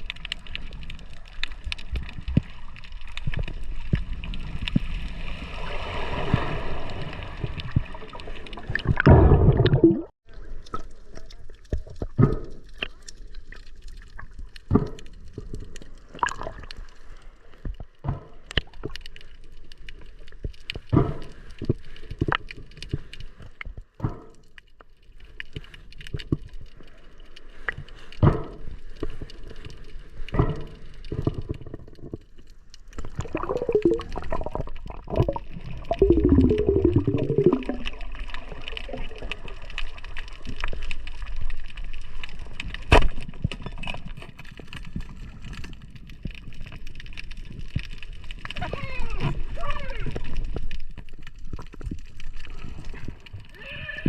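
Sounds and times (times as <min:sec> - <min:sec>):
sharp clicks and pops: 0:00.0 - 0:05.1, 0:07.4 - 0:54.0
water gurgling and bubbling: 0:03.3 - 0:10.8, 0:33.0 - 0:40.4.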